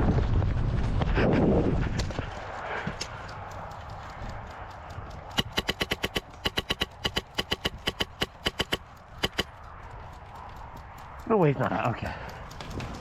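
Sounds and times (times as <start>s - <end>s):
airsoft gun rapid bursts: 5.4s - 9.5s.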